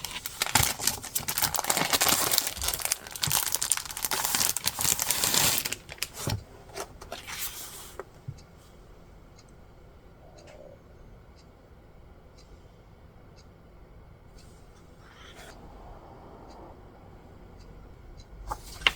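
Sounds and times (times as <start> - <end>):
packaging crinkling and tearing: 0.0 - 6.4.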